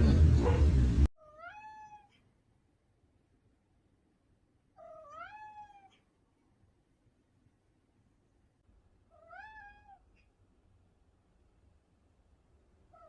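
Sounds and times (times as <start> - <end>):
loud rough noise: 0.0 - 1.1
cat meowing: 1.2 - 2.2, 4.8 - 6.0, 9.1 - 10.2.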